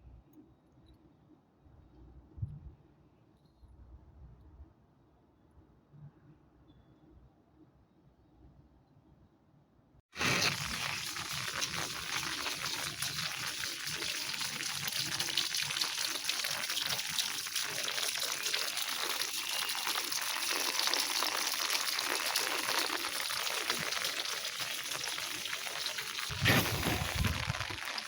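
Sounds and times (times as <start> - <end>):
water running: 10.2 - 28.0.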